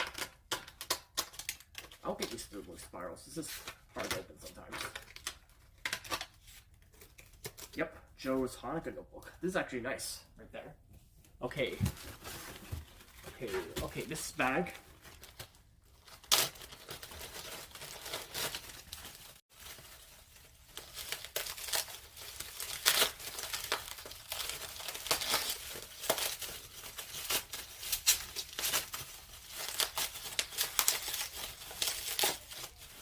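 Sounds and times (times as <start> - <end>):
plastic and bubble wrap crinkling: 11.6 - 33.0.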